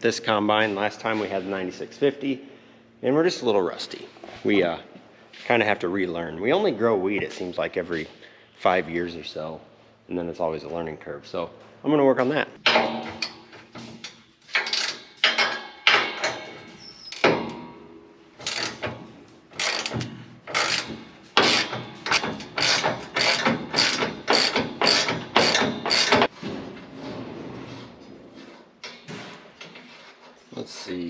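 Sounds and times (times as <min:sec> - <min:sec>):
ratchet wrench clicking: 0:19.6 - 0:26.3.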